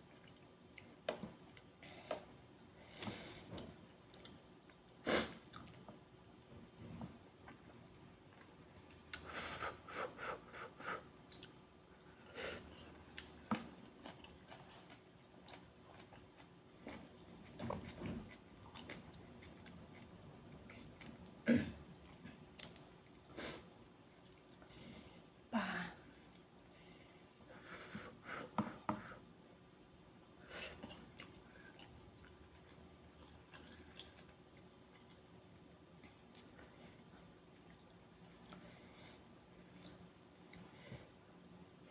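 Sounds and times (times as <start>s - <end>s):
wet chewing and mouth sounds: 0.0s - 9.3s, 11.0s - 24.7s, 30.8s - 40.7s.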